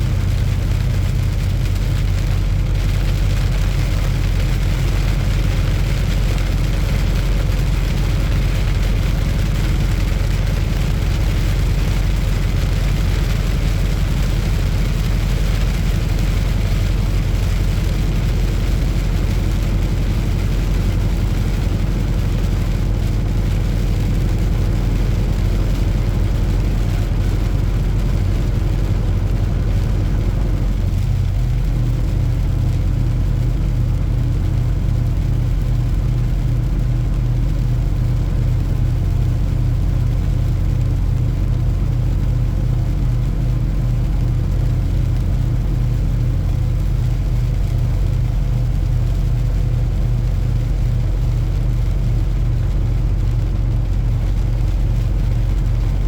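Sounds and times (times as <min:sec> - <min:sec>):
diesel truck engine running: 0:00.0 - 0:56.0
rain: 0:00.0 - 0:56.0.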